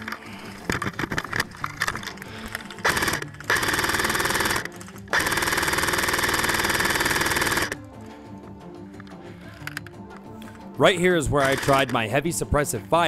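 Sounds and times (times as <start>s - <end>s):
airsoft gun firing full auto: 2.8s - 7.8s.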